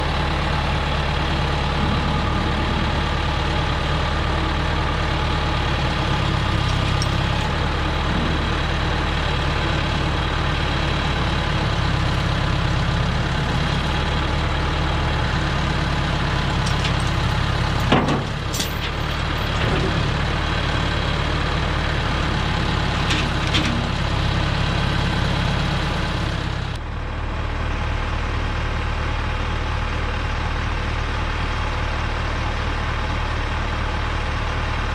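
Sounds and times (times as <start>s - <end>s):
sawmill engine running: 0.0s - 27.4s.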